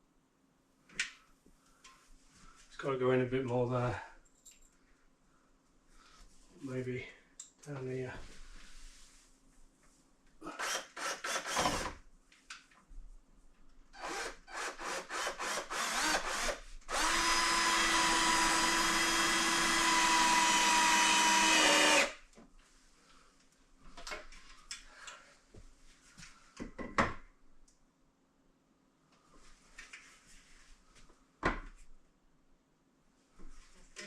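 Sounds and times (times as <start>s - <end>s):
power drill driving screw into wood: 10.6s - 12.0s, 14.0s - 22.2s.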